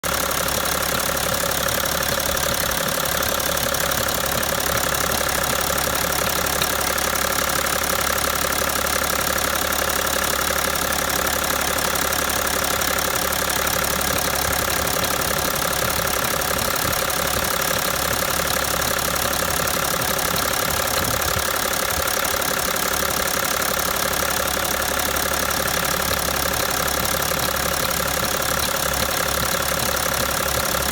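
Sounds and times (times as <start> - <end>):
diesel engine idling: 0.0 - 30.9.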